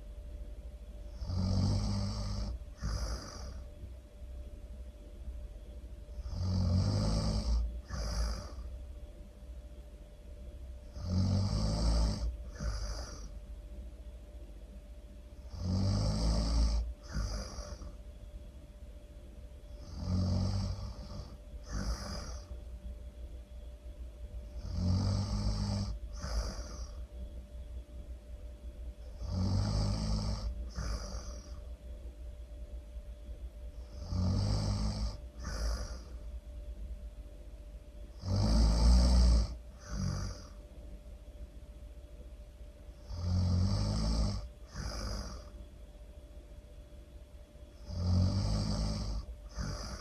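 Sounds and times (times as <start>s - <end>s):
person snoring loudly: 1.1s - 3.7s, 6.1s - 8.7s, 10.9s - 13.4s, 15.4s - 18.0s, 19.7s - 22.6s, 24.5s - 27.1s, 29.0s - 31.6s, 33.8s - 36.2s, 38.1s - 40.6s, 43.0s - 45.6s, 47.8s - 50.0s.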